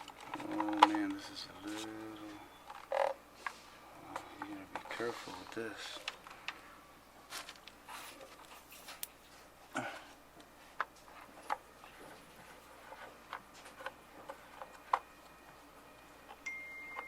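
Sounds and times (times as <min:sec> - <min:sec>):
wiring harness rustling: 0:07.3 - 0:09.5.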